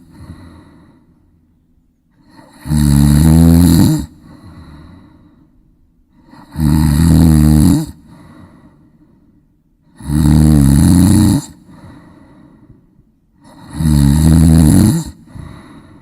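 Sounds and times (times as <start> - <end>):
soft breathing: 0.0 - 2.6, 4.1 - 6.5, 8.0 - 10.0, 11.6 - 13.7, 15.1 - 16.0
loud snoring: 2.2 - 4.8, 6.2 - 8.4, 9.9 - 11.9, 13.4 - 15.8.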